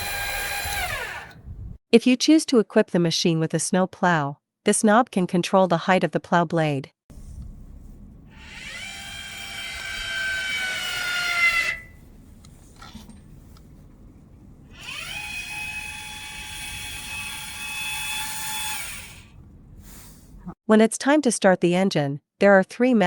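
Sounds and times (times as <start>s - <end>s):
electric motor whine: 0.0s - 1.5s, 8.3s - 12.0s, 14.7s - 19.4s.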